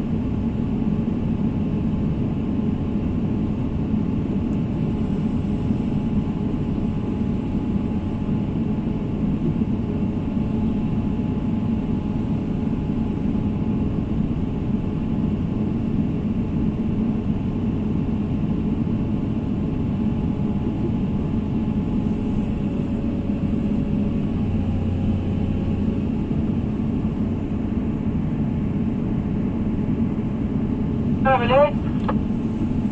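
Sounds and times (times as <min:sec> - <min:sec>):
excavator diesel engine rumbling: 0:19.2 - 0:32.9.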